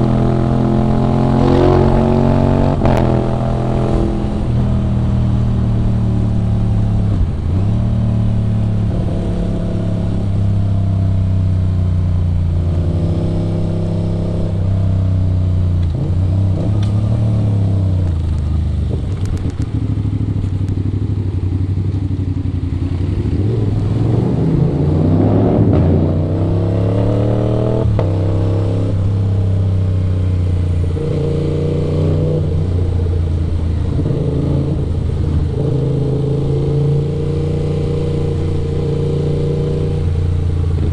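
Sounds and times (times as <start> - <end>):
motorcycle engine revving through gears: 0.0 - 40.9.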